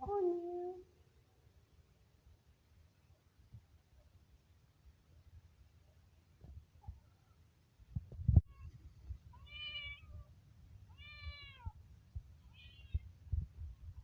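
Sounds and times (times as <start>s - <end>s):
kitten meowing: 10.9s - 11.8s, 12.5s - 13.0s.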